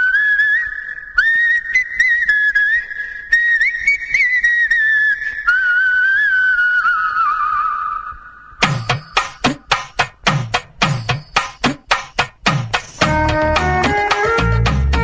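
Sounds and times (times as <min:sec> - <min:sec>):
whistled ringtone melody: 0:08.7 - 0:09.5.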